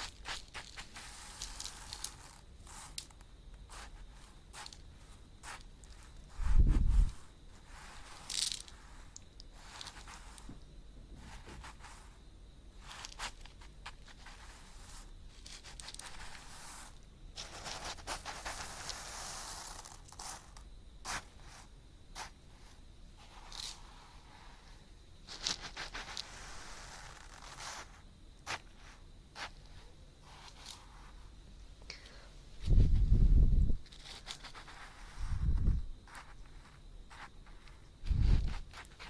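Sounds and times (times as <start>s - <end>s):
crackly scrapes and crunches: 0.0s - 10.6s, 12.8s - 22.3s, 23.2s - 31.2s, 33.8s - 39.0s.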